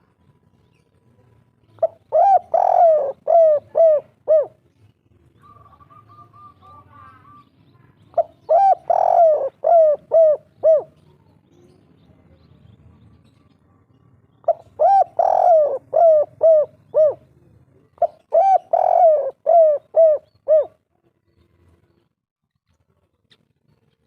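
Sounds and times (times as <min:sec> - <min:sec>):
dove cooing: 0:01.8 - 0:04.6, 0:05.4 - 0:07.4, 0:08.1 - 0:11.2, 0:14.4 - 0:17.4, 0:18.0 - 0:20.8.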